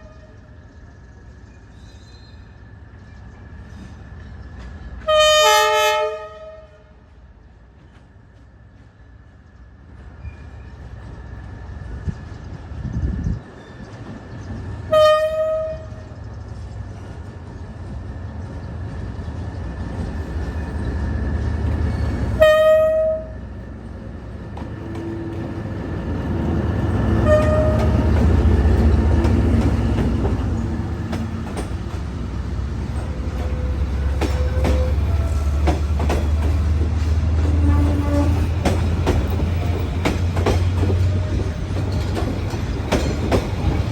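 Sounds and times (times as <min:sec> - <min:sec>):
train horn blasts: 0:00.0 - 0:00.5, 0:05.0 - 0:07.0, 0:14.9 - 0:16.1, 0:22.4 - 0:23.5, 0:27.1 - 0:28.3, 0:33.0 - 0:35.8, 0:37.4 - 0:38.9
diesel locomotive rumble: 0:00.0 - 0:43.9
wheels clicking over rail joints: 0:27.2 - 0:43.9.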